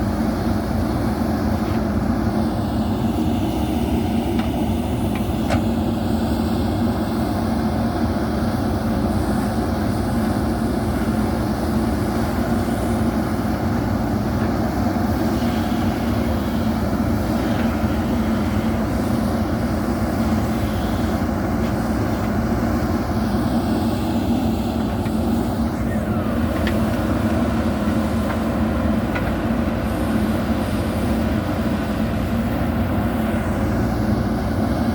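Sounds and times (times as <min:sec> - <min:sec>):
backhoe diesel engine droning: 0:00.0 - 0:34.9.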